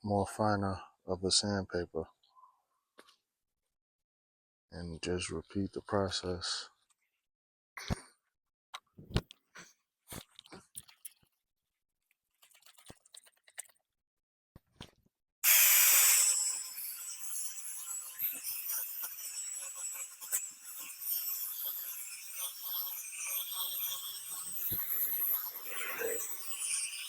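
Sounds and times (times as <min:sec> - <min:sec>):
drill whining: 0:15.4 - 0:27.0.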